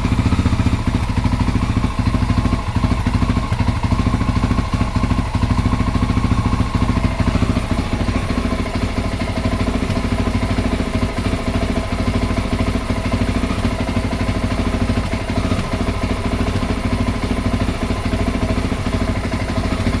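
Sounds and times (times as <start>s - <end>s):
motorcycle engine idling roughly: 0.0s - 20.0s.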